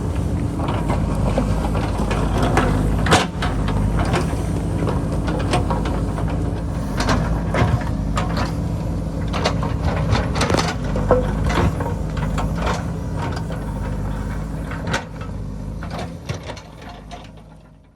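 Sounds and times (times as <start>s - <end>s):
diesel engine running: 0.0s - 17.9s.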